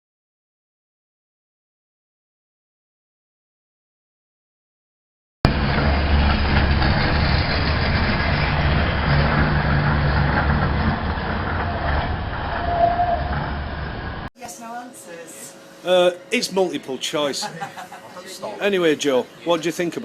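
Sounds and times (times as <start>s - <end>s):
diesel locomotive engine droning: 5.5s - 14.3s.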